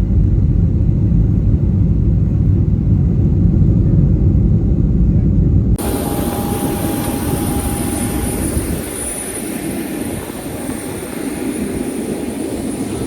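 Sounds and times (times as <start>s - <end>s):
faint high steady tone: 5.8s - 13.0s.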